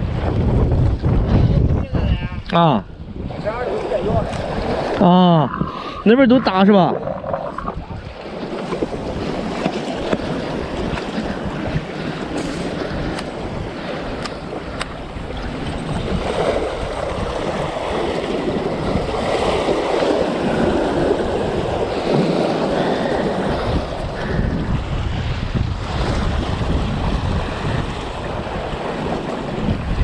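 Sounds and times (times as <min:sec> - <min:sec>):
sea waves on rocky shore: 0:00.0 - 0:30.0
wind buffeting microphone: 0:00.0 - 0:30.0.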